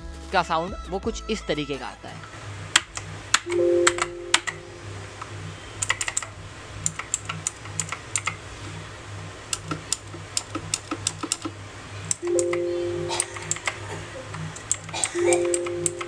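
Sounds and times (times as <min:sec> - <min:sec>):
mechanical keyboard clicks: 0:02.8 - 0:08.4, 0:09.5 - 0:16.0.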